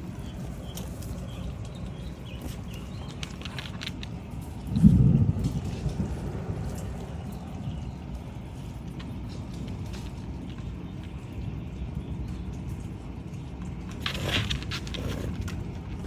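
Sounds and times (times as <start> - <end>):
thunder rumbling: 4.2 - 10.6.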